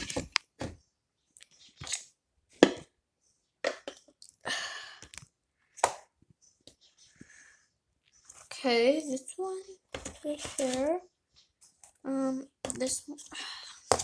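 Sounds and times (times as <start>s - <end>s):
scraping rustle: 10.0s - 12.0s.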